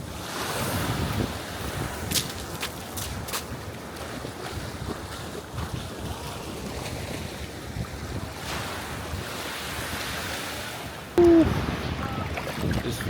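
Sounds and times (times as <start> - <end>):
sea waves washing on beach: 0.0 - 13.0
wind buffeting microphone: 0.0 - 13.0
person calling out loudly: 11.2 - 11.6.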